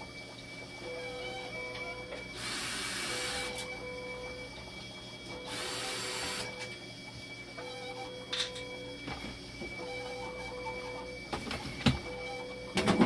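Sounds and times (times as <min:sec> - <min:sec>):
steady machine hum: 0:00.0 - 0:13.0
machine hissing rushes: 0:02.3 - 0:03.6, 0:05.5 - 0:06.6.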